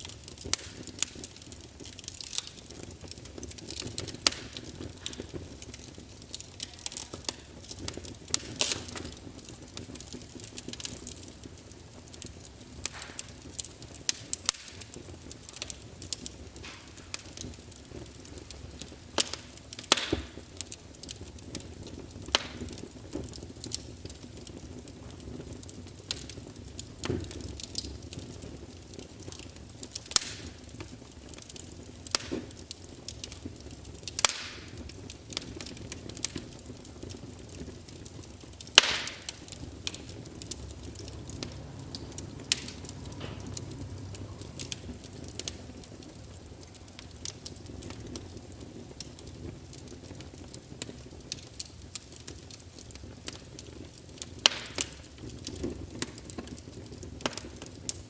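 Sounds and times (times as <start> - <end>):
fire crackling and popping: 0.0 - 58.0
low rush of flame: 0.0 - 58.0.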